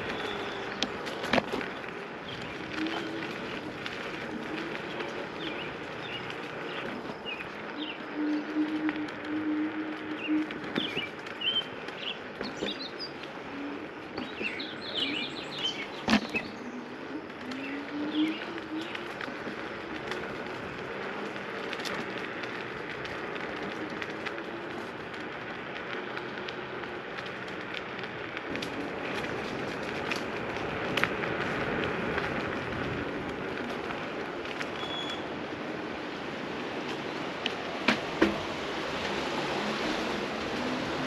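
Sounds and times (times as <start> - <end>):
small birds chirping: 0.0 - 23.8
steady rushing noise: 0.0 - 41.0.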